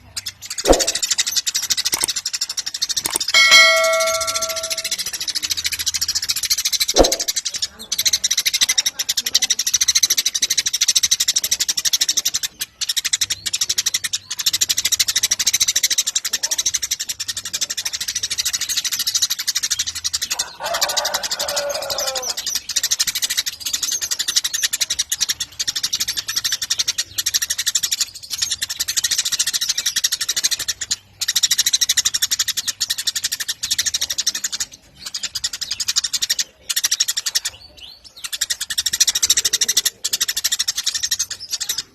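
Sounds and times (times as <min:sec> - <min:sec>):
sparrows chirping: 0:00.0 - 0:41.9
lower bird call falling in pitch: 0:03.4 - 0:05.0.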